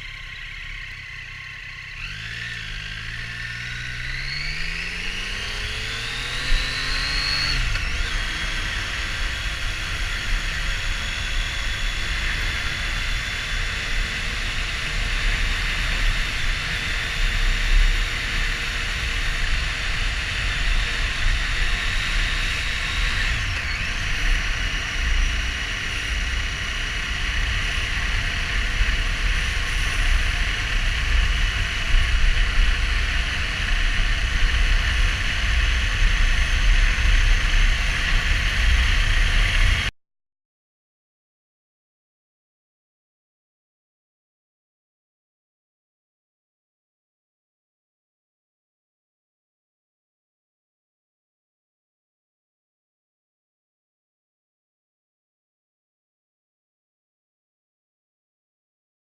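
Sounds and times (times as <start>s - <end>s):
motorcycle engine: 0.0s - 39.9s.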